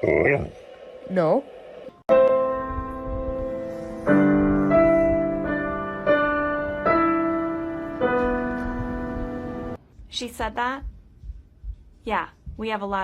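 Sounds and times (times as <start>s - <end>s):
piano playing slow chords: 2.1s - 9.8s.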